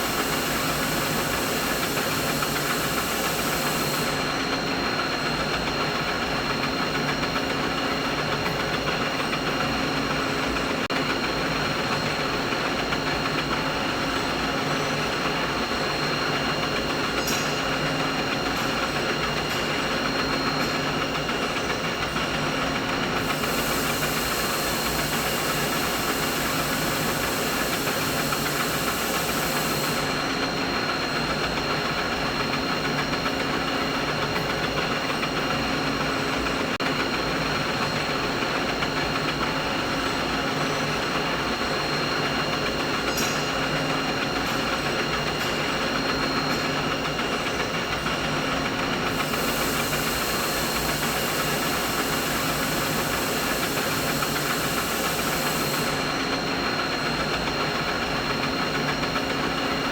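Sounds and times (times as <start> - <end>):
high hiss: 0.0 - 4.2, 23.2 - 30.2, 49.1 - 56.1
machinery humming: 0.0 - 6.9, 10.4 - 59.2.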